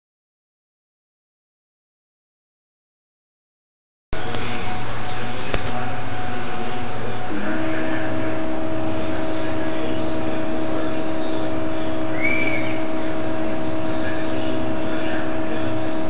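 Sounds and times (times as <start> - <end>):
mechanical hum: 4.2 - 16.0
stepper motors whining: 4.2 - 16.0.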